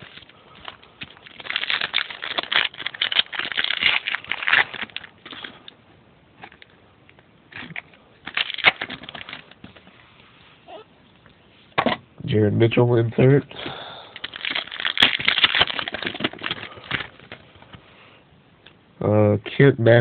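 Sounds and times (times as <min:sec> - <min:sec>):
wrapper crinkling: 0:00.0 - 0:05.7, 0:07.5 - 0:09.8, 0:14.2 - 0:17.5.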